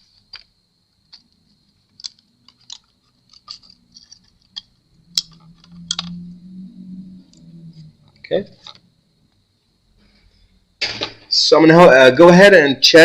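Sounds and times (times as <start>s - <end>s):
faint high whine: 0.0s - 13.0s
small tools clicking and tapping: 1.1s - 6.2s.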